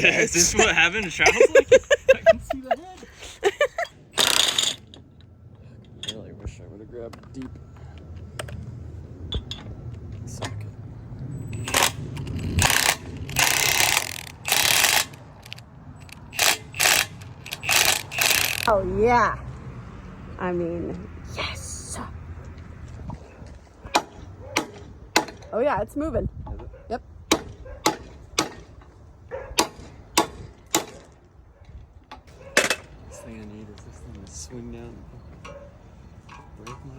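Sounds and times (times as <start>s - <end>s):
ratchet wrench clicking: 4.2s - 4.8s, 11.5s - 18.7s.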